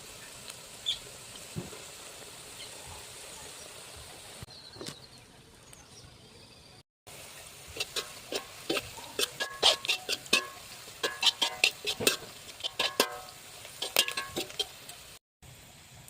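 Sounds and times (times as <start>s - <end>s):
metal spoon clinking in pan: 7.8s - 14.7s.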